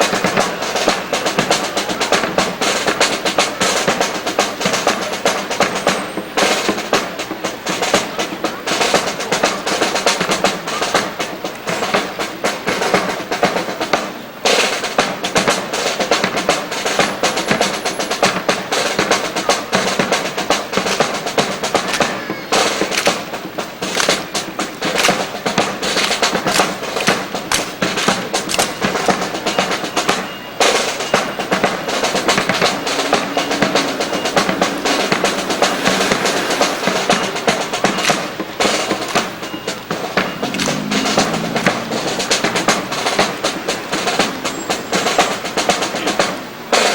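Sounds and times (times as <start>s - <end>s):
snare drum cadence: 14.8s - 46.3s
bass drum: 31.2s - 44.5s.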